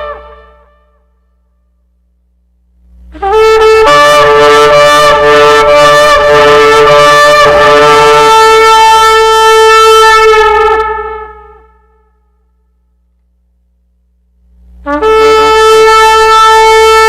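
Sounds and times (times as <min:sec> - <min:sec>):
shofar blast: 0:00.0 - 0:01.4, 0:03.1 - 0:12.5, 0:14.8 - 0:17.0.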